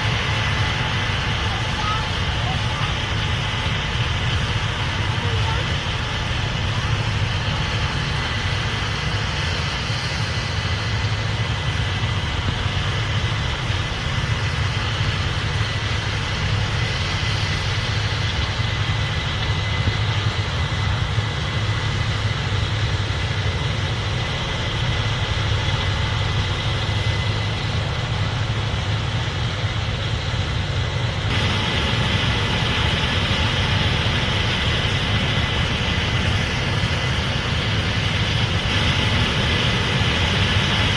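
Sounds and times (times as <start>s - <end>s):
combine harvester running: 0.0s - 40.9s
high whine and hiss: 0.0s - 40.9s.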